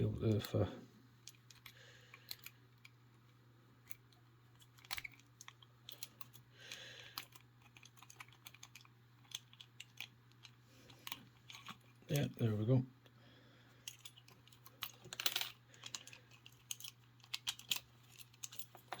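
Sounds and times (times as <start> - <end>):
metallic clicking and scraping: 7.1 - 12.2, 13.8 - 19.0.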